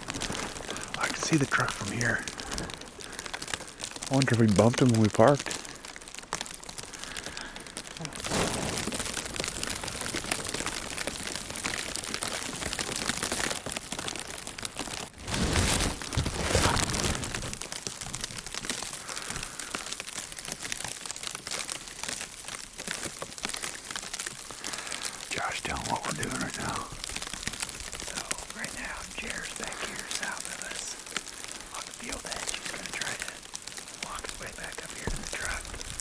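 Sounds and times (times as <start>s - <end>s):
footsteps crunching through snow: 8.1s - 9.2s, 15.1s - 17.6s.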